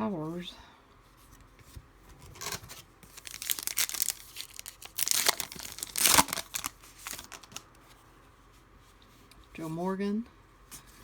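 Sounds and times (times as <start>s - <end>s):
foil wrapper crinkling: 2.4s - 7.8s.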